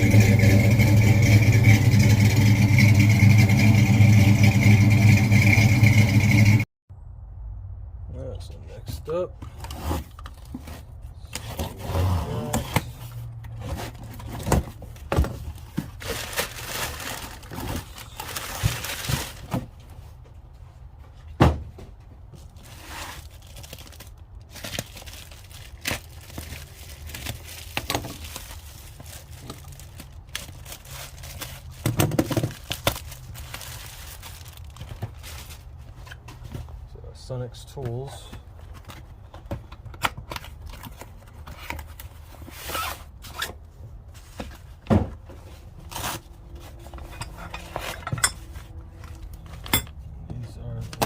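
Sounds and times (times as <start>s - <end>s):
packaging rustling: 13.9s - 19.6s, 22.6s - 36.2s
packaging crinkling and tearing: 15.6s - 19.5s, 22.6s - 36.1s
knocks and thunks: 21.3s - 22.1s, 44.8s - 45.4s.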